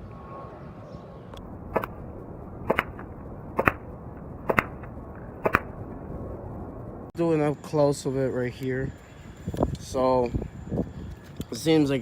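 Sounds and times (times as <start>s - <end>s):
wind noise: 0.0s - 7.2s, 8.4s - 12.0s
air pistol shots cracking: 1.7s - 2.0s, 2.6s - 3.0s, 3.6s - 4.8s, 5.4s - 5.7s.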